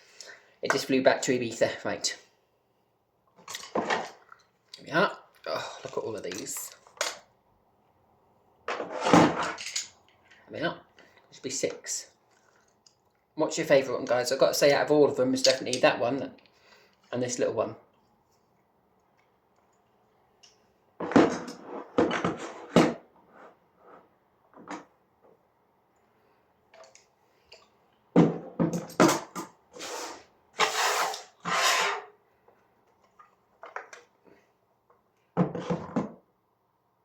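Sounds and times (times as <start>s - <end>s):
hissy metal scrapes: 29.8s - 32.1s.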